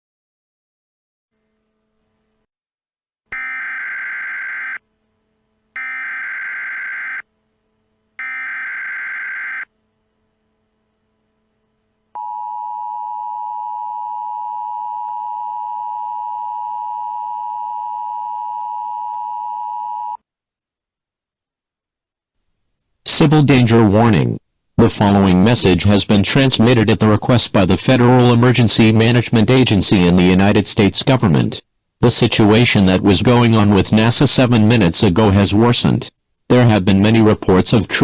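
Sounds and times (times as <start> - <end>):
harsh digital data bursts: 3.4 - 4.8, 5.8 - 7.2.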